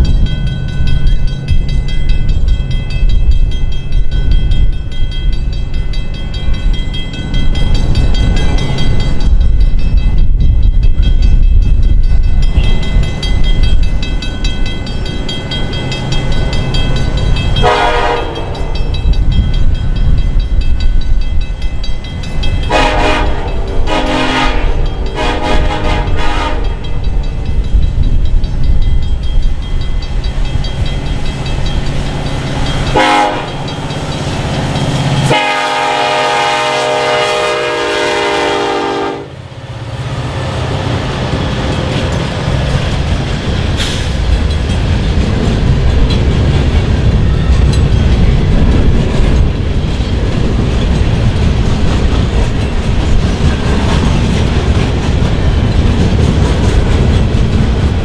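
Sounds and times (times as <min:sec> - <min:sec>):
freight train rumbling past: 0:00.0 - 0:58.0
locomotive air horn: 0:17.6 - 0:18.6, 0:22.7 - 0:26.8, 0:32.9 - 0:33.6, 0:35.3 - 0:39.4.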